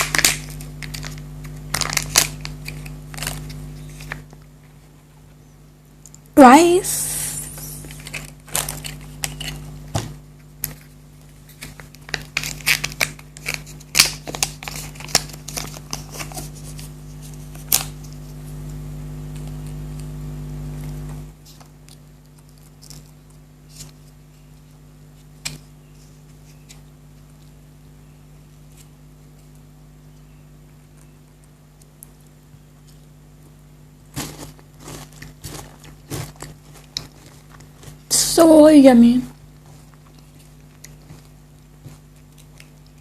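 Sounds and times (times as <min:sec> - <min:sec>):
wrapper crinkling and tearing: 0:00.0 - 0:04.4, 0:07.5 - 0:10.0, 0:10.6 - 0:18.0, 0:21.6 - 0:24.1, 0:34.1 - 0:38.2, 0:39.6 - 0:43.0
low steady hum: 0:00.0 - 0:43.0.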